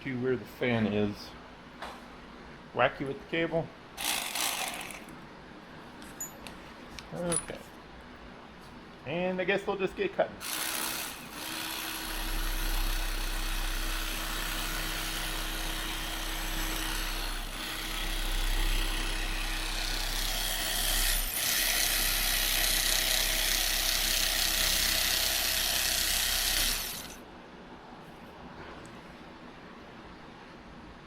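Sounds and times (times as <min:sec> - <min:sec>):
electric cutter cutting foam: 0:04.0 - 0:05.1, 0:10.4 - 0:27.2.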